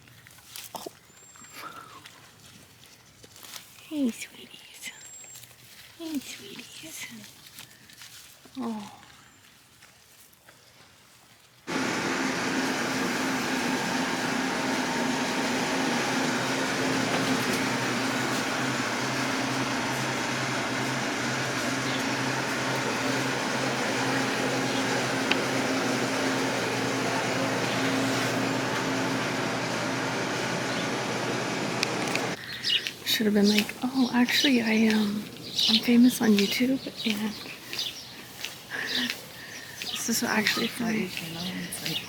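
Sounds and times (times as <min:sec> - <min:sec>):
constant hum: 0:11.7 - 0:32.4
mechanical whirring and rushing: 0:11.7 - 0:32.4.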